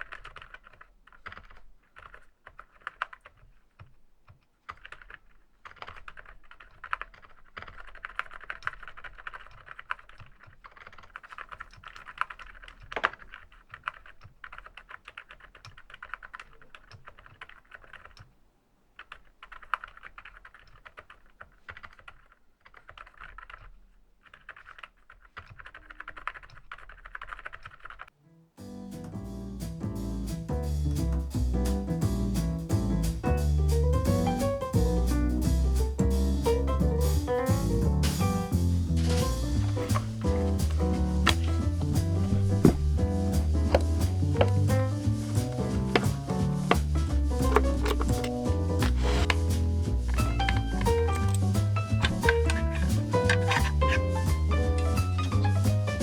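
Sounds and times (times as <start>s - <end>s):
mechanical keyboard typing: 0.0s - 18.3s, 19.0s - 28.1s, 39.1s - 55.9s
jazzy piano music: 28.3s - 56.0s.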